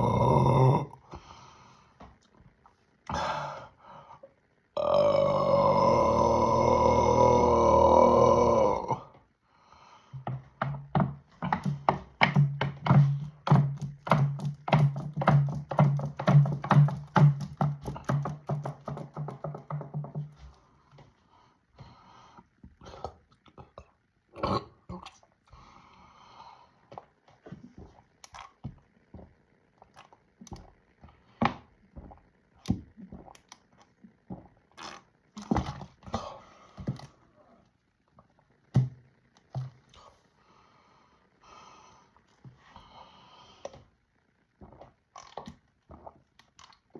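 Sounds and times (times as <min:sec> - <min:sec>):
person gulping soda: 0:00.0 - 0:01.1, 0:22.7 - 0:25.4, 0:27.8 - 0:37.1, 0:44.5 - 0:46.9
person breathing: 0:00.8 - 0:02.2, 0:03.1 - 0:04.4, 0:09.0 - 0:10.4, 0:20.6 - 0:23.2, 0:25.5 - 0:27.0, 0:36.0 - 0:37.6, 0:39.9 - 0:43.9.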